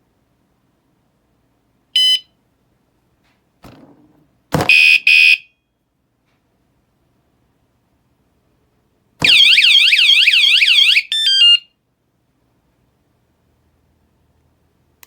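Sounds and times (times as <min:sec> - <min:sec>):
bike alarm beeps: 0:02.0 - 0:02.3
thump: 0:03.6 - 0:04.8.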